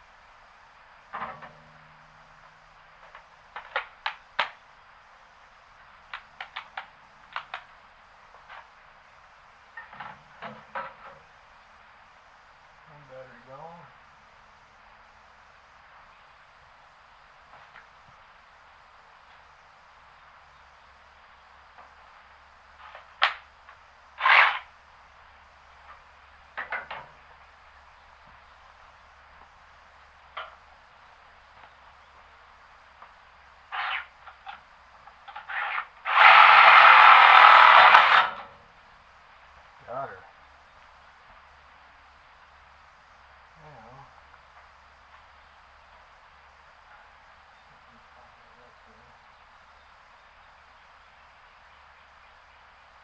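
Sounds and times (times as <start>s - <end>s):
sharp knocks and clunks: 1.0s - 4.6s, 9.8s - 11.3s
clatter: 35.2s - 38.6s.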